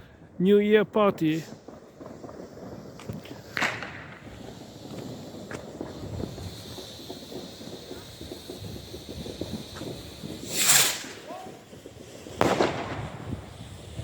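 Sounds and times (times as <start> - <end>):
footsteps outdoors: 1.5 - 10.1.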